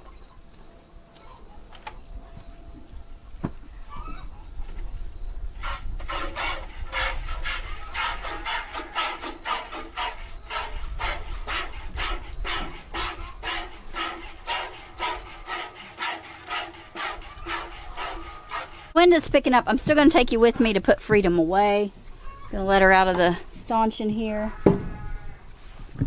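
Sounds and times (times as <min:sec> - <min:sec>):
wind rumbling on microphone: 0:01.9 - 0:08.4, 0:10.2 - 0:14.0, 0:18.9 - 0:26.0.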